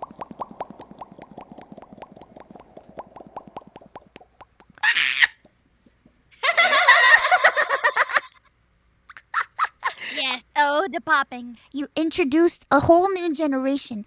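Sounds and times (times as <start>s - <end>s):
person making lip pops: 0.0s - 4.8s
warbling high vocal trill: 0.0s - 5.4s
high-pitched vocal squeal: 4.8s - 5.4s.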